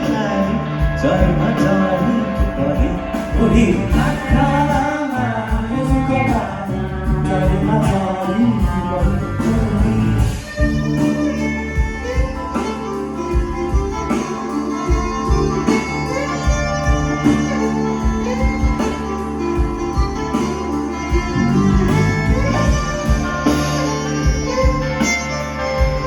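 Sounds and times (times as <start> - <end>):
bass: 0.0 - 26.0
guitar melody: 0.0 - 26.0
steady drum beat: 0.0 - 26.0.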